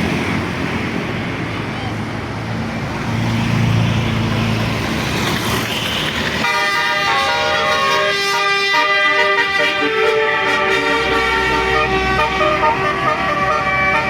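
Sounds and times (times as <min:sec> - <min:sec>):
bus engine and road noise: 0:00.0 - 0:14.0
multi-note bus horn melody: 0:06.4 - 0:14.0.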